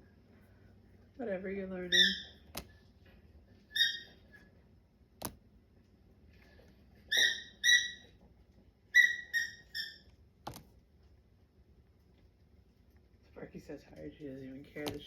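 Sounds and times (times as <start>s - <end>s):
squeaky dog toy squeaking: 3.7s - 4.2s, 7.1s - 8.1s, 9.0s - 10.1s.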